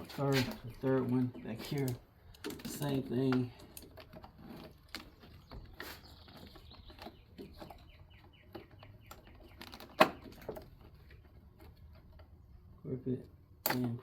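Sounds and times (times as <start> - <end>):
small clicks and scrapes: 0.0 - 12.5.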